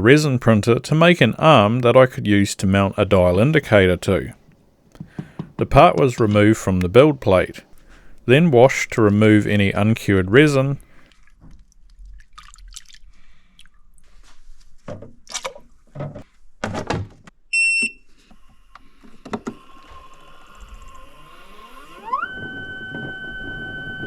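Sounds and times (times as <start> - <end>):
handling knocks and clatter: 15.9 - 17.3
appliance electronic beep: 17.5 - 18.0, 21.9 - 24.0.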